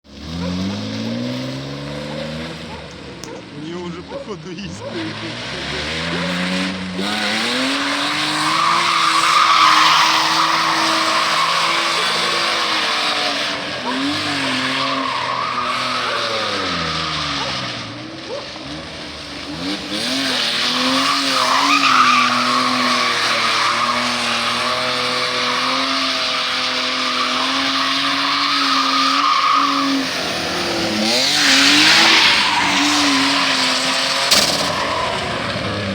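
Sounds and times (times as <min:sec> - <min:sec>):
car engine revving: 0:00.0 - 0:35.9
tyres squealing: 0:02.3 - 0:35.9.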